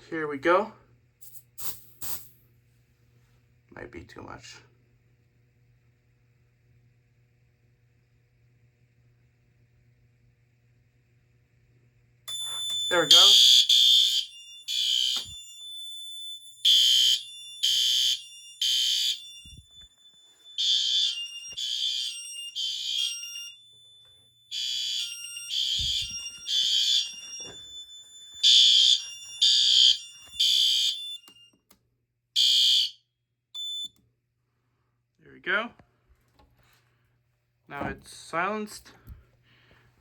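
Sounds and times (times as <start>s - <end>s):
fire alarm horn blasts: 12.3s - 31.6s, 32.4s - 34.0s.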